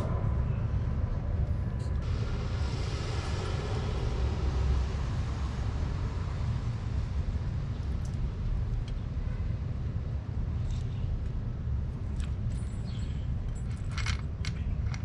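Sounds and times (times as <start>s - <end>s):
low rumble: 0.0s - 12.1s.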